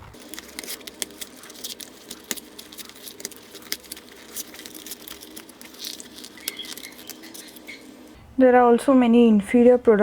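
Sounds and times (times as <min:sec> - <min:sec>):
small objects clicking and rattling: 0:00.1 - 0:07.8.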